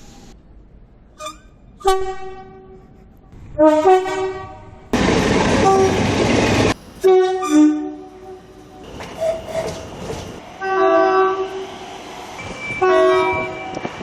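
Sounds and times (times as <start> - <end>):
two-tone train horn: 3.6 - 4.8, 5.5 - 6.1, 7.0 - 9.7, 10.6 - 11.6, 12.6 - 13.9.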